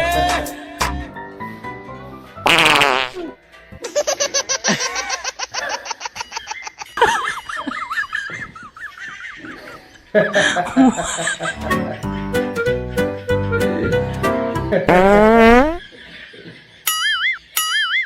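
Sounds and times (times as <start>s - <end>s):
background music: 0.0s - 5.0s, 10.9s - 15.6s
loud wavering fart: 2.5s - 3.3s, 14.9s - 15.8s
rapid pulsing laughter: 3.9s - 12.2s.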